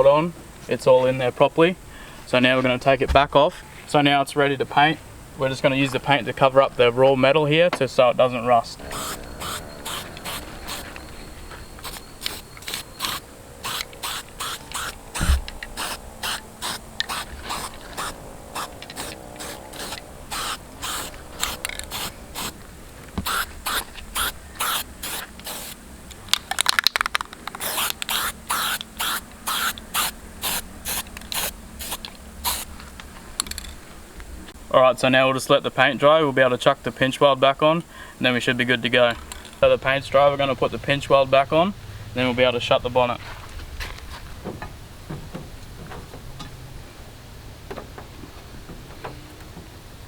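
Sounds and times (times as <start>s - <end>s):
spray can ball rattling: 8.9s - 11.0s, 11.8s - 22.6s, 23.2s - 32.7s.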